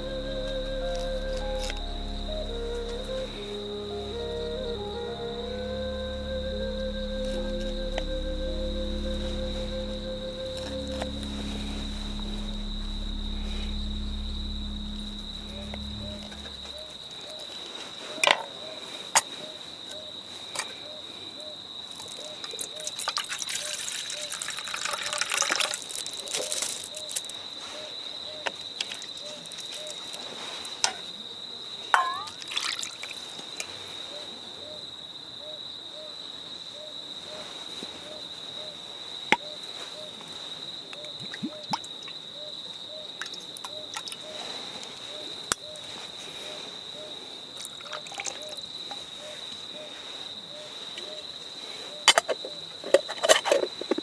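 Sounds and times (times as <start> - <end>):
high insect drone: 0.0 - 17.6
liquid pouring and trickling: 22.9 - 26.8, 32.4 - 33.2.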